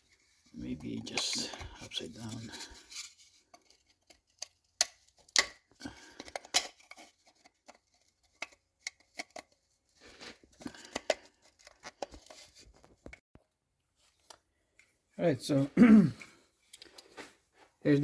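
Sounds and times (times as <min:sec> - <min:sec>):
plastic scraping and rubbing: 0:00.0 - 0:05.4.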